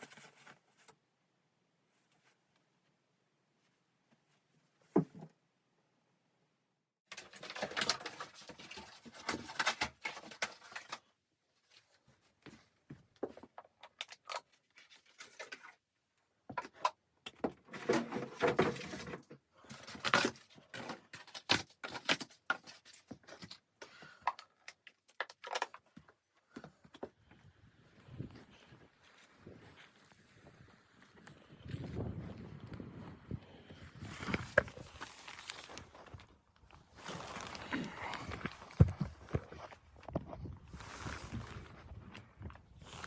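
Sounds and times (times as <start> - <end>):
rustling and clattering: 7.1 - 11.1, 16.5 - 24.2.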